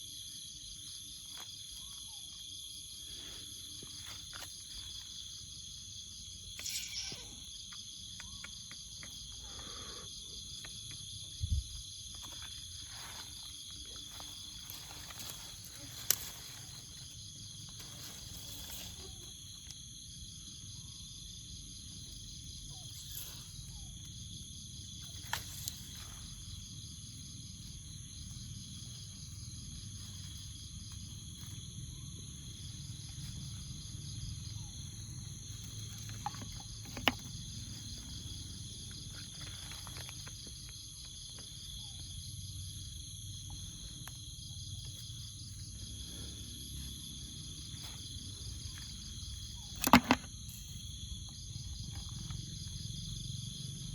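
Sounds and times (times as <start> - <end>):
insect pulsing trill: 0.0 - 53.9
insects calling: 0.0 - 53.9
rustles in vegetation: 10.8 - 20.0, 22.2 - 49.8.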